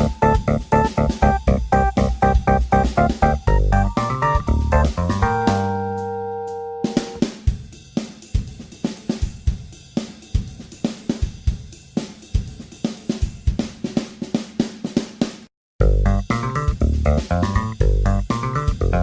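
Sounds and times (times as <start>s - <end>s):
held music chord: 0.0s - 7.2s
drum kit beat: 0.0s - 19.0s.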